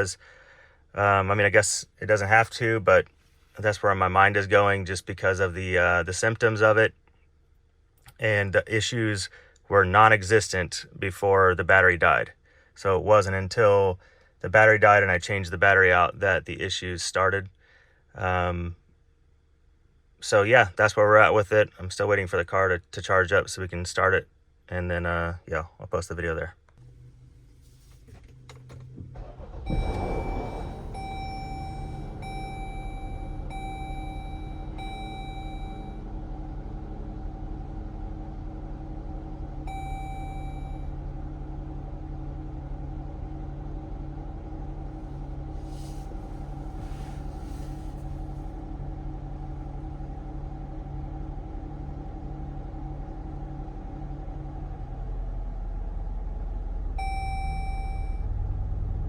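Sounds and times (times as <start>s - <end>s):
car engine starting and idling: 0.0s - 6.9s, 26.6s - 59.0s
dashboard warning chimes: 28.1s - 36.2s, 39.6s - 41.0s, 57.0s - 58.3s.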